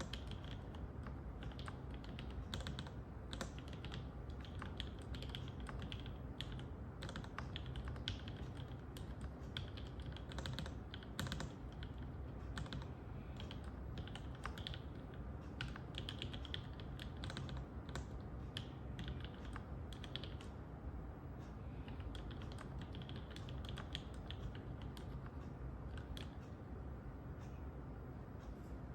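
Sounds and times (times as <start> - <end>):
mechanical keyboard typing: 0.0 - 20.6, 21.9 - 26.4
spacebar keystrokes: 21.9 - 25.3.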